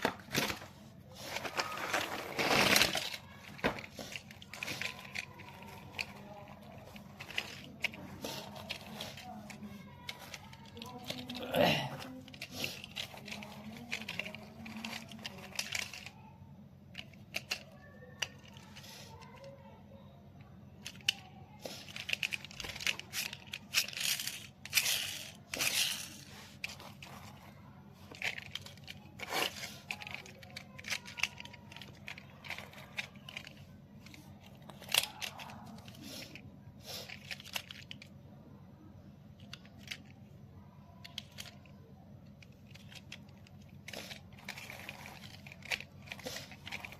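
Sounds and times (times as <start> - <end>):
tearing and crinkling packaging: 0.0 - 16.3, 21.1 - 36.2, 42.5 - 46.9.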